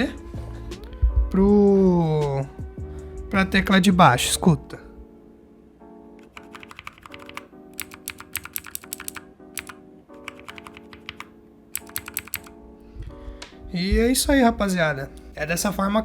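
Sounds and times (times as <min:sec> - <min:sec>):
mechanical keyboard key clicks: 0:06.2 - 0:12.5.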